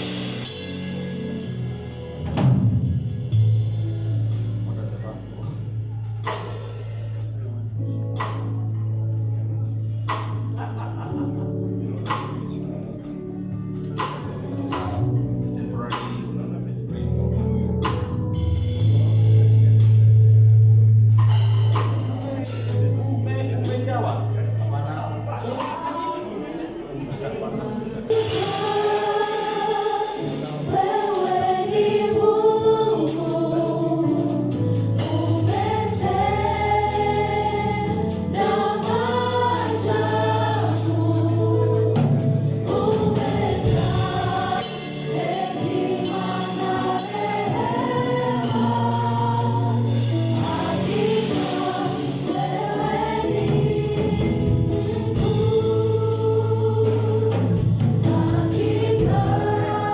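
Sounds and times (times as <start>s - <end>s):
low bass line: 0.0s - 25.6s, 30.1s - 59.9s
choir singing: 25.8s - 59.9s
percussion: 41.9s - 59.9s.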